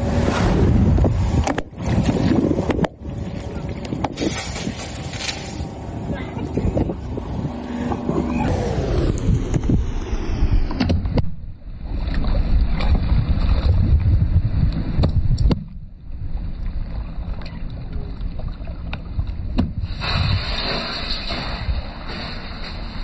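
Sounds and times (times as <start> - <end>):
wind buffeting microphone: 0.0 - 15.7.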